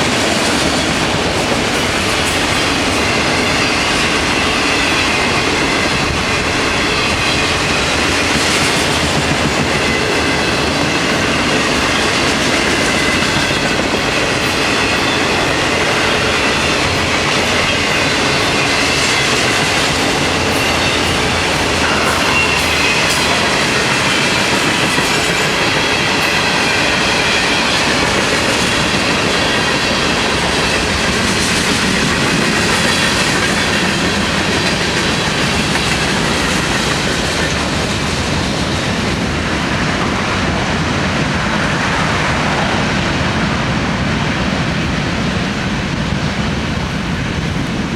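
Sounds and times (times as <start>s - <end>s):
train wheels clattering over rails: 0.0s - 47.9s.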